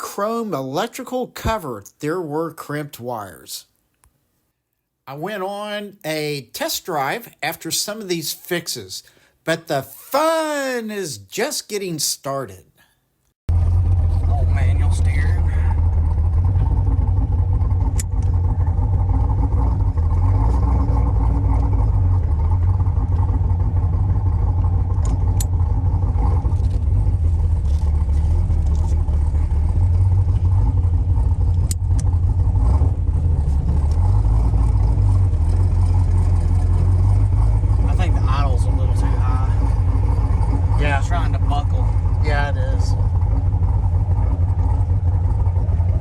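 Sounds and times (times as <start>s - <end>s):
car engine running: 13.5s - 46.0s.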